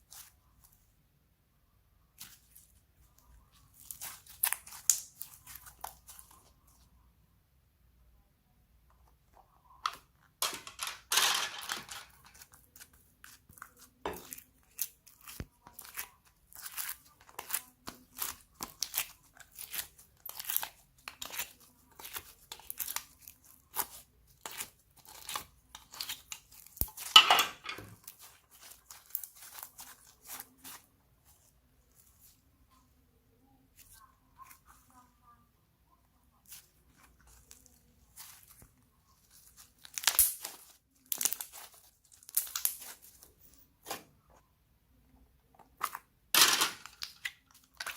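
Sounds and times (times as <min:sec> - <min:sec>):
slime crackling and popping: 0:03.7 - 0:06.3, 0:12.3 - 0:27.3, 0:28.0 - 0:30.8, 0:37.2 - 0:43.2.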